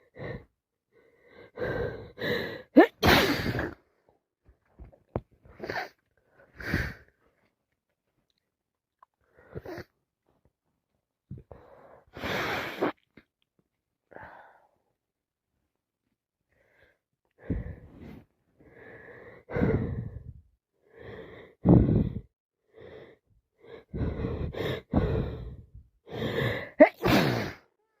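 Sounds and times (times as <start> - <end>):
wheezy gasping breaths: 0.0 - 2.8, 5.5 - 7.2, 11.4 - 13.0, 16.6 - 27.7
person sneezing: 2.8 - 3.8, 26.8 - 27.7.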